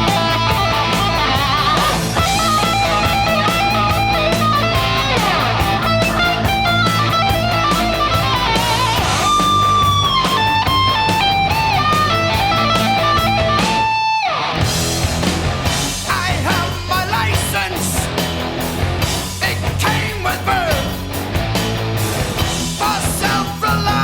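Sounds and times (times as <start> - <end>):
lead electric guitar wavering notes: 0.0 - 14.8
bass and drums: 0.0 - 24.0.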